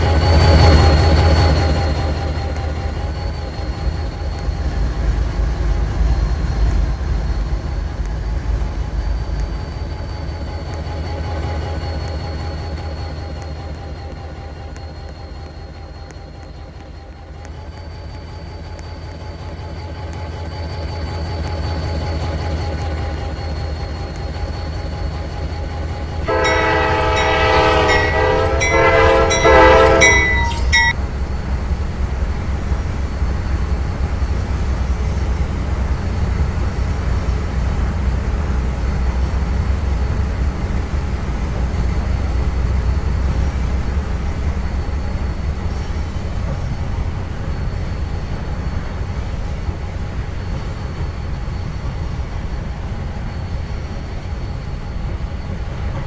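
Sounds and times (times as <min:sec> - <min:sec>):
diesel train rumbling: 0:00.0 - 0:56.0
train air horn blasts: 0:26.2 - 0:30.9.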